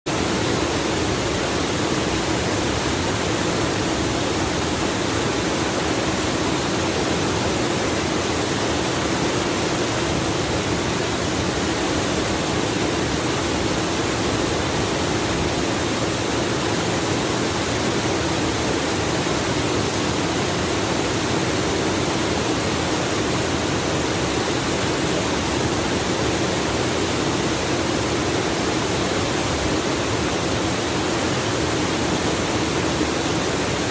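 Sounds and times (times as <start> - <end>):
waterfall rushing: 0.1 - 33.9.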